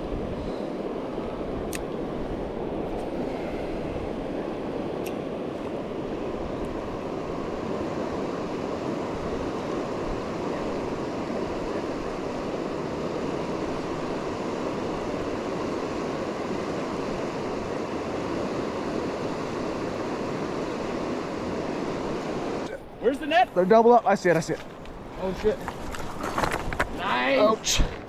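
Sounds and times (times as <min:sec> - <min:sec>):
river current rushing: 0:00.0 - 0:28.0.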